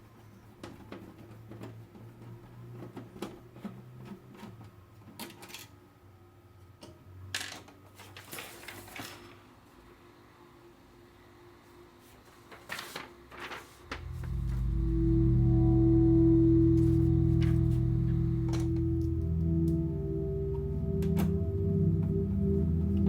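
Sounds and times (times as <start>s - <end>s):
rustling: 12.2s - 14.9s
steady low hum: 13.4s - 23.0s.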